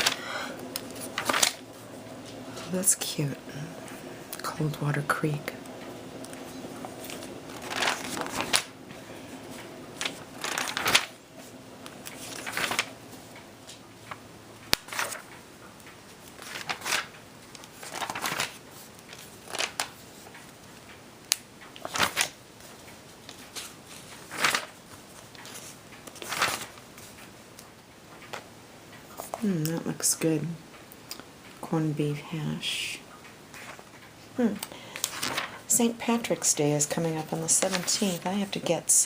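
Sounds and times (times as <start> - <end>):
magazine pages turning: 0.0 - 2.4, 5.7 - 13.3, 14.0 - 15.4, 16.1 - 27.3, 33.5 - 33.9, 34.9 - 35.7, 36.9 - 38.7.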